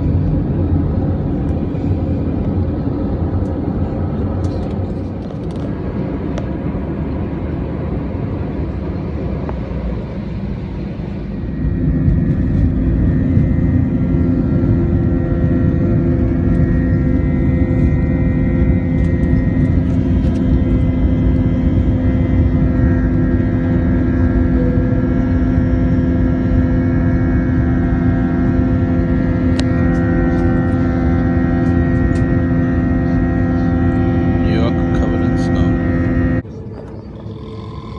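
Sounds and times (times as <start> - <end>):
engine whine of fixed tones: 0.0 - 37.9
jet engines rumbling: 0.0 - 37.9.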